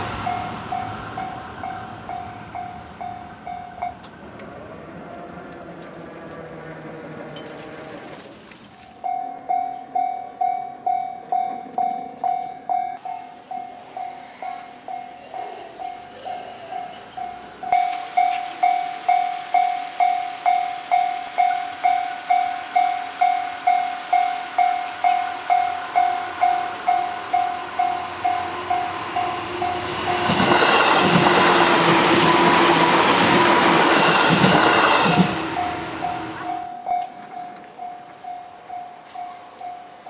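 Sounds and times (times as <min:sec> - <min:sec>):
level-crossing bell dinging: 0:00.0 - 0:04.1, 0:09.0 - 0:30.9, 0:34.0 - 0:40.0
electric train passing: 0:00.0 - 0:40.0.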